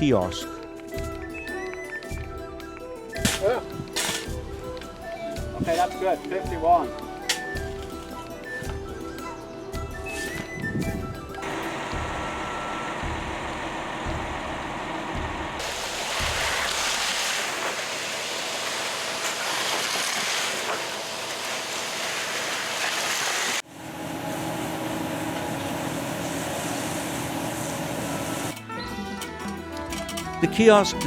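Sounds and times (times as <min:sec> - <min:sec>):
construction machinery engine: 0:11.4 - 0:28.6.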